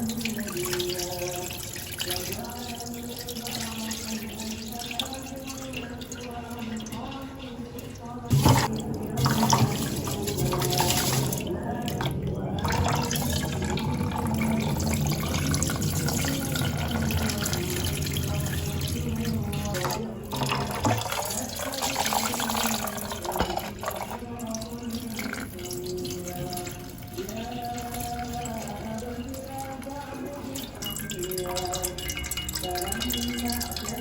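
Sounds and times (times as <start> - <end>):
tap water running into sink: 7.8 - 34.0.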